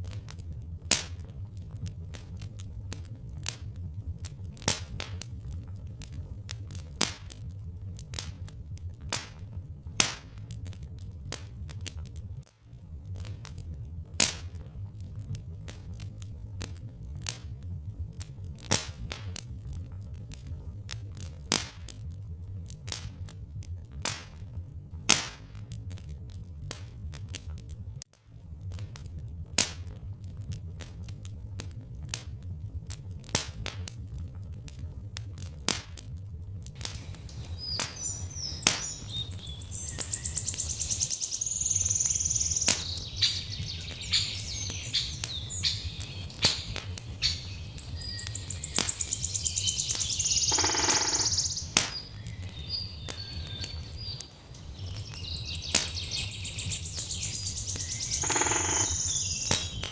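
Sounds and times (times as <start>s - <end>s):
wood fire crackling and popping: 0.0s - 59.9s
low steady rumble: 36.1s - 50.5s
birds chirping and singing: 36.8s - 59.9s.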